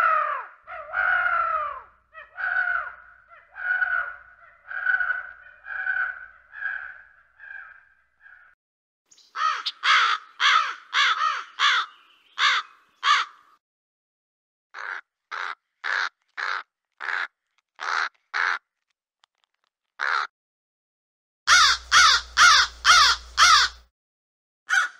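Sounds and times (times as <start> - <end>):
crows cawing: 0.0 - 8.6, 9.4 - 13.6, 14.8 - 18.6, 20.0 - 20.3, 21.5 - 23.8, 24.7 - 24.9.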